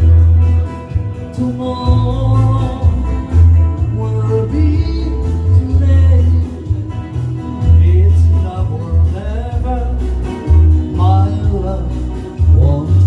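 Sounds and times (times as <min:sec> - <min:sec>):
bass notes: 0:00.0 - 0:13.0
guitar: 0:00.0 - 0:13.0
person singing: 0:00.0 - 0:13.0.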